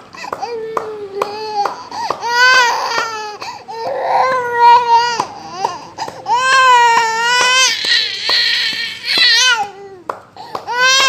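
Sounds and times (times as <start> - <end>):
young child crying: 0.2 - 11.0.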